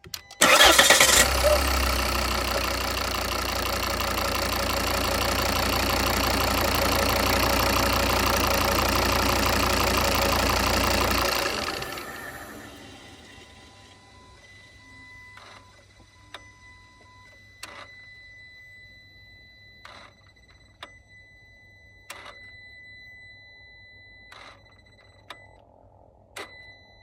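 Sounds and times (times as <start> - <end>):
diesel engine starting and idling: 0.4 - 14.8.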